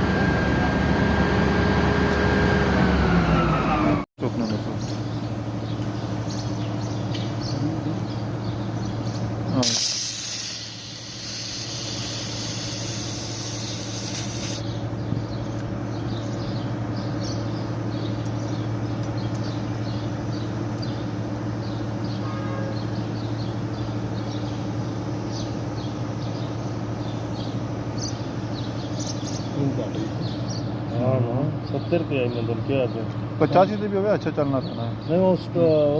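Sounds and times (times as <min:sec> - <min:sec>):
pump engine humming: 0:07.0 - 0:15.9
gas hissing loudly: 0:09.5 - 0:14.7.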